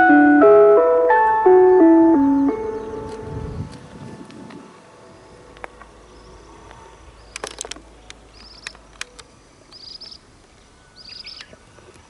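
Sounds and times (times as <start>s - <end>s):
bird chirping: 0.0s - 4.3s, 5.0s - 12.0s
sharp clicks: 7.3s - 10.2s.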